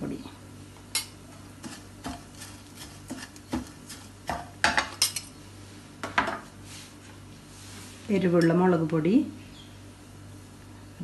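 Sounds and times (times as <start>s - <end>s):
spoon scraping a pan: 1.0s - 5.3s.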